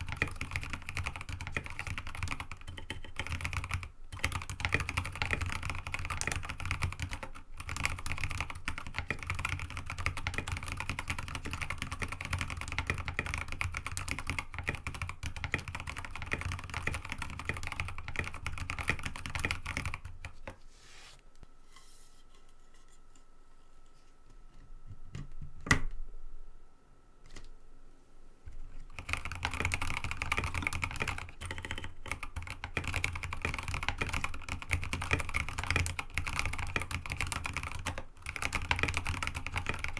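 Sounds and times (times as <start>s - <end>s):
mechanical keyboard typing: 0.0s - 20.4s, 28.9s - 39.9s.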